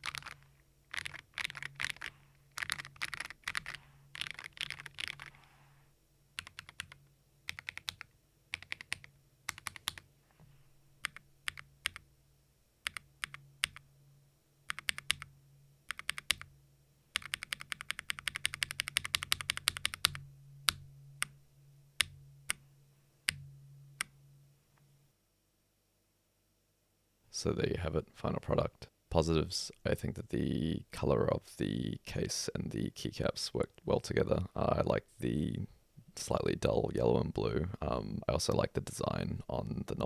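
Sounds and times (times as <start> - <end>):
mechanical keyboard typing: 0.0 - 5.4, 6.4 - 10.0, 11.0 - 12.0, 12.8 - 13.8, 14.7 - 15.3, 15.9 - 16.5, 17.2 - 20.2.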